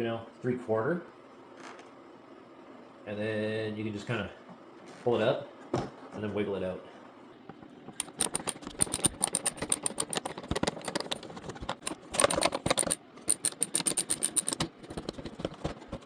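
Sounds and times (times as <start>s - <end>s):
plastic cover clicking and rattling: 8.0s - 16.0s
plastic scraping: 14.4s - 16.0s.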